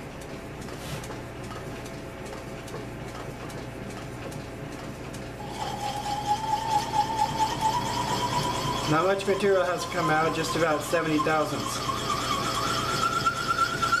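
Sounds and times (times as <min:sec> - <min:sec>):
drill bit squealing: 0:05.4 - 0:14.0
lathe humming: 0:05.4 - 0:14.0.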